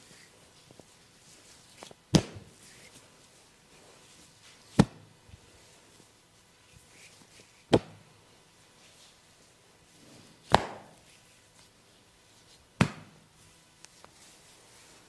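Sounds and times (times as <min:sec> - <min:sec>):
hand slaps on body: 0:10.5 - 0:11.0, 0:12.8 - 0:13.1.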